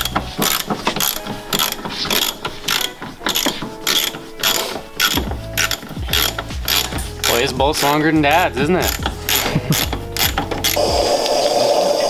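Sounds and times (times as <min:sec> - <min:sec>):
ratchet wrench clicking: 0:00.0 - 0:10.9.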